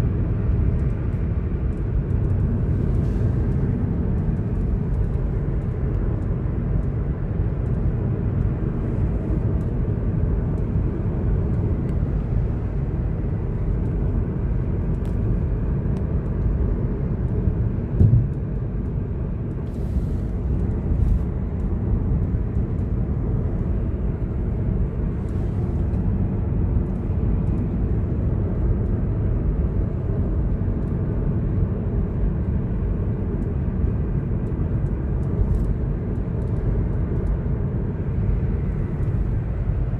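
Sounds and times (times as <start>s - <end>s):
car road and engine rumble: 0.0s - 39.9s
thump: 18.0s - 18.3s.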